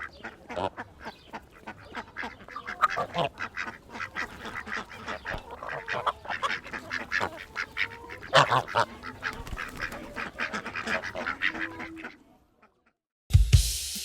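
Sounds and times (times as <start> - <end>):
hens clucking and squawking: 0.0 - 12.9.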